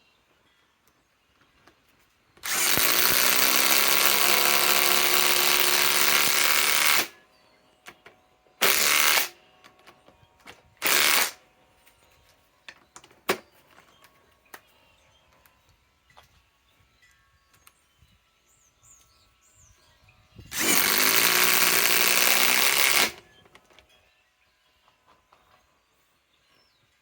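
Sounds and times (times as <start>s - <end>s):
impact wrench hammering screw: 2.4s - 7.1s, 8.6s - 9.4s, 10.8s - 11.4s, 20.5s - 23.2s.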